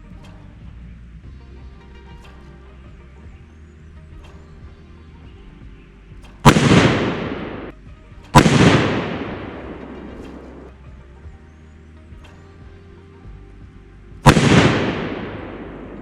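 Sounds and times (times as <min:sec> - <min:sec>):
rifle shots with echo: 0:06.4 - 0:07.8, 0:08.4 - 0:10.7, 0:14.2 - 0:16.0.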